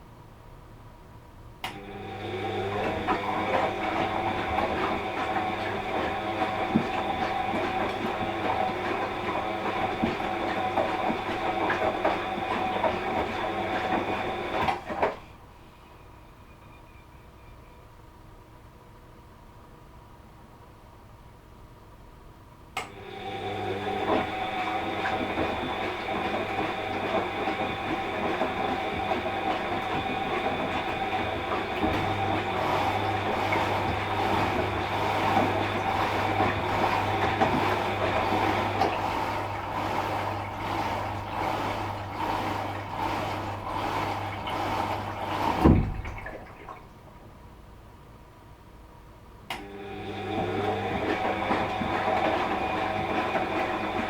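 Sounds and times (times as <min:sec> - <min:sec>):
washing machine drum churning: 0:01.7 - 0:15.4, 0:22.8 - 0:47.6, 0:49.6 - 0:54.0
washing machine knock: 0:02.7 - 0:15.1, 0:24.0 - 0:46.8, 0:50.3 - 0:54.0.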